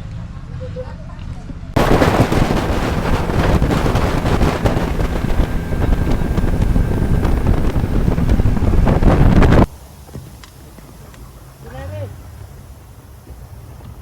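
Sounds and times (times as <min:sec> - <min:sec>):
wind buffeting microphone: 0:01.7 - 0:11.4.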